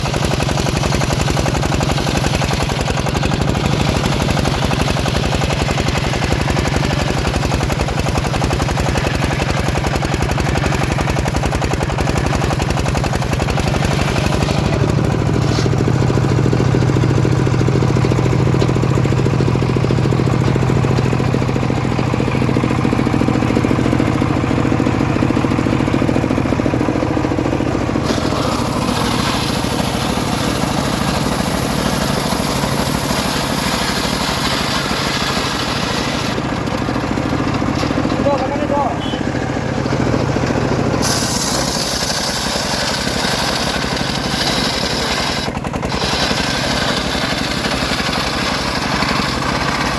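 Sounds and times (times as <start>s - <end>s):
engine deep steady hum: 0.0s - 49.9s
sawmill high hiss: 0.1s - 16.5s, 27.9s - 36.5s, 40.5s - 49.9s.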